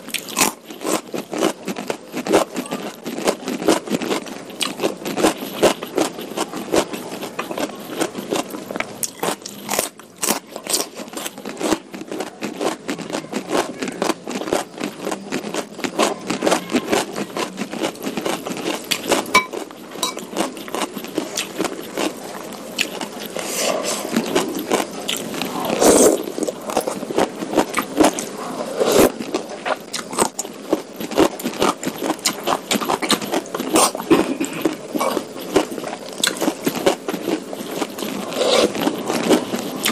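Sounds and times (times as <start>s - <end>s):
wet chewing and mouth clicks: 0.1s - 28.3s, 29.0s - 39.9s.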